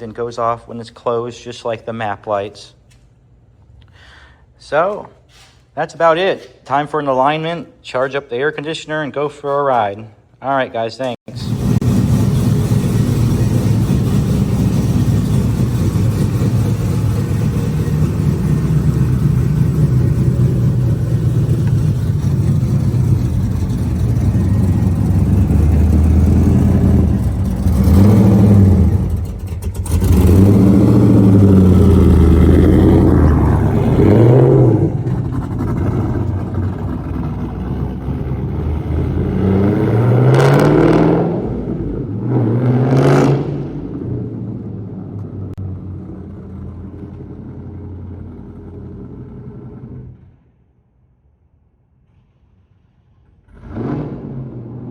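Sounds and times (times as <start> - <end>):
car engine running and revving: 11.3 - 50.3.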